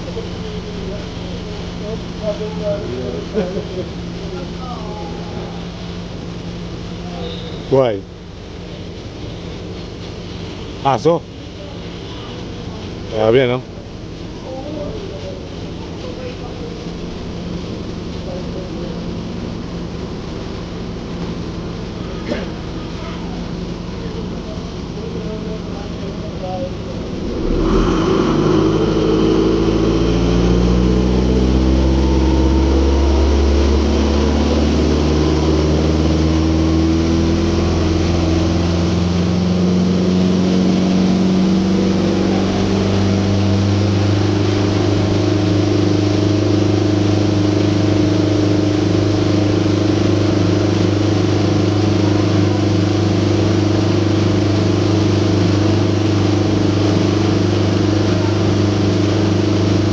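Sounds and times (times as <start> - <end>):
ferry engine rising in pitch: 26.4 - 59.9.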